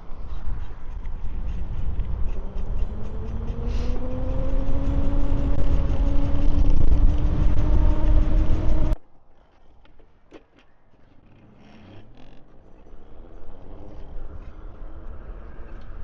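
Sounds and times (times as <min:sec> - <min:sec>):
wind and riding rumble: 0:00.0 - 0:16.0
electric bike motor whining: 0:02.4 - 0:09.0.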